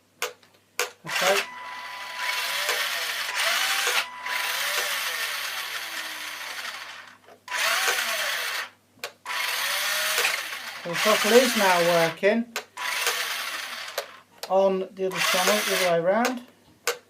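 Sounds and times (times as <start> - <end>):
toy car electric motor whining: 1.1 - 8.7, 9.3 - 12.0, 12.8 - 14.2, 15.2 - 15.9.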